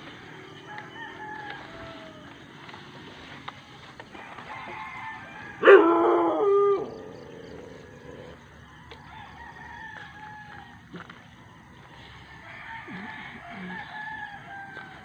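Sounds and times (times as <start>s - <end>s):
rooster crowing: 0.0s - 2.8s, 4.1s - 7.3s, 8.6s - 10.8s, 11.4s - 15.0s
distant rooster crowing: 0.0s - 3.4s, 4.0s - 15.0s.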